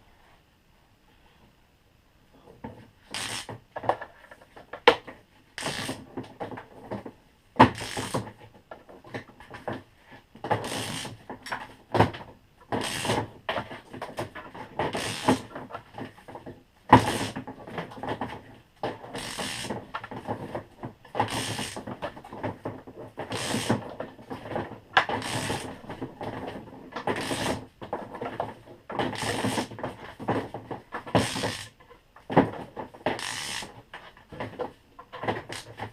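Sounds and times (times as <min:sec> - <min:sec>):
wire stripper scraping insulation: 0:03.1 - 0:03.6, 0:05.6 - 0:06.2, 0:07.6 - 0:08.3, 0:10.4 - 0:11.6, 0:12.7 - 0:13.3, 0:14.8 - 0:15.6, 0:16.9 - 0:17.5, 0:19.0 - 0:22.4, 0:23.2 - 0:32.0, 0:33.0 - 0:35.9.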